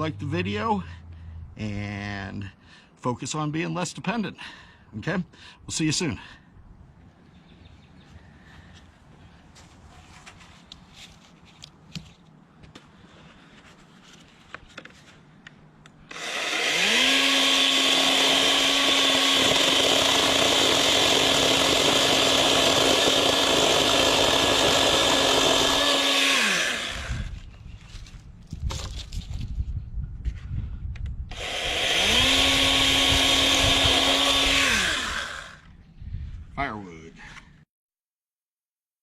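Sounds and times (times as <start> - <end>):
electric chainsaw motor: 16.1 - 27.4, 31.3 - 35.7.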